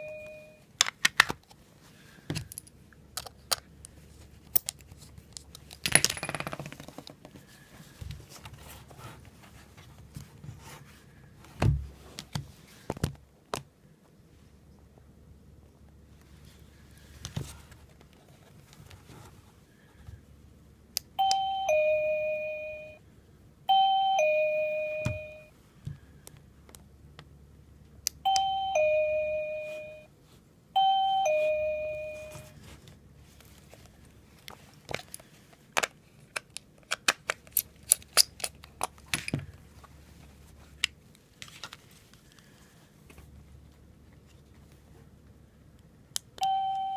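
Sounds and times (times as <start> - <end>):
two-note doorbell chime: 0.0 - 0.6, 21.2 - 23.0, 23.7 - 25.5, 28.2 - 30.1, 30.8 - 32.6, 46.4 - 46.9.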